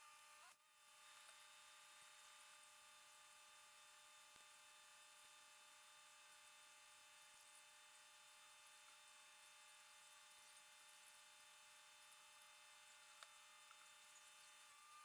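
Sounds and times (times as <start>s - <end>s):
faint electrical hum: 0.0s - 15.0s
faint ticks: 12.8s - 15.0s.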